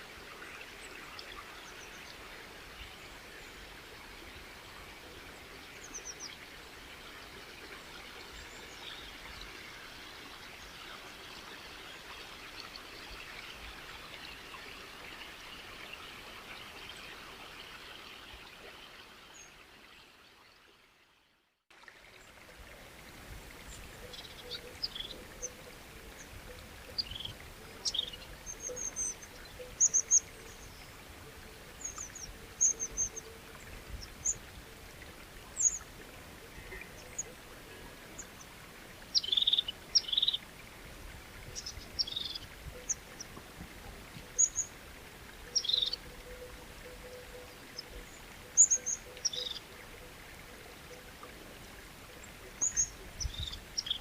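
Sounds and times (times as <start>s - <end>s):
running water rushing: 0.0s - 21.0s, 21.7s - 54.0s
quiet water background: 0.0s - 54.0s
birds chirping: 39.1s - 40.4s, 45.4s - 46.0s.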